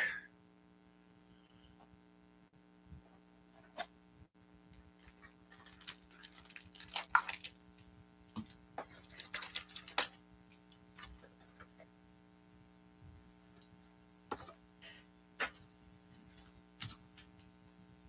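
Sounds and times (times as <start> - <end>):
steady electrical hum: 0.0 - 18.0
packaging crinkling and tearing: 4.8 - 7.8, 8.4 - 10.2.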